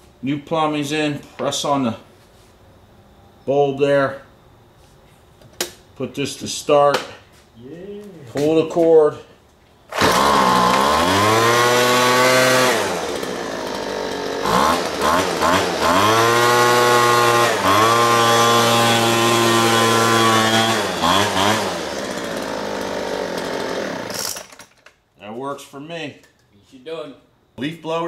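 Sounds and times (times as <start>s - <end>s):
leaf blower engine revving: 9.9s - 24.6s.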